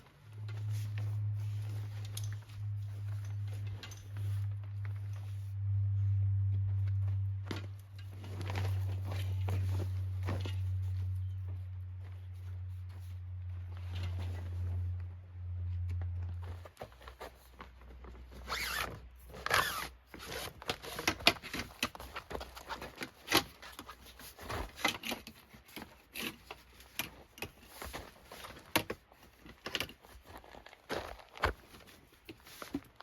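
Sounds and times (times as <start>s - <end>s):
rustling and clicking handling: 0.0s - 5.6s, 6.5s - 33.0s
low hum: 0.0s - 17.0s.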